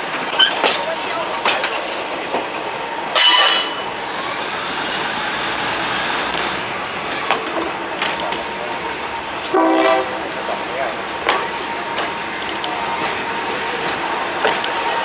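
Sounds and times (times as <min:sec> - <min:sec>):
diesel train running on track: 0:00.0 - 0:15.0
train horn blast: 0:09.5 - 0:10.2.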